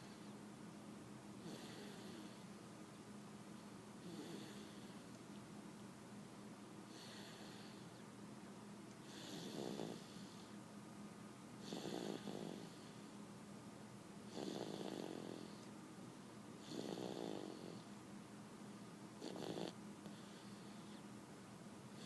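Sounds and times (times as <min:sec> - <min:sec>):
person snoring: 0:04.0 - 0:05.0, 0:09.1 - 0:10.3, 0:11.6 - 0:12.9, 0:14.3 - 0:15.6, 0:16.6 - 0:17.8.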